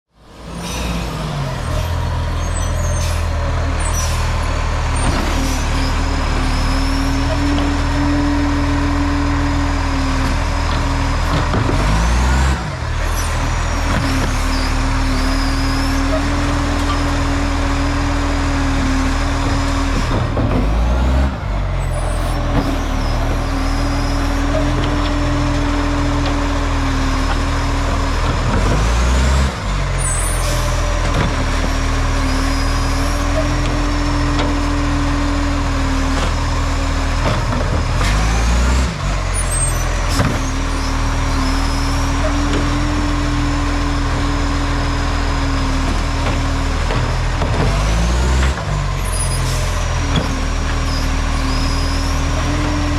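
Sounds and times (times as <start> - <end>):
diesel truck engine droning: 0.1 - 52.9.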